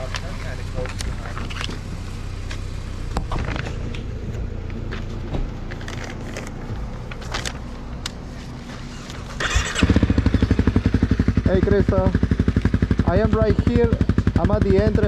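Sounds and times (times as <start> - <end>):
vehicle engine running: 0.0 - 15.0
sharp clicks and rattles: 5.6 - 8.2.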